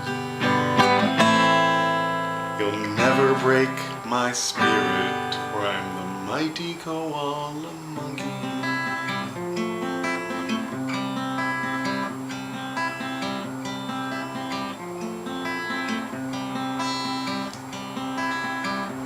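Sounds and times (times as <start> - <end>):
acoustic guitar strumming: 0.0 - 19.0.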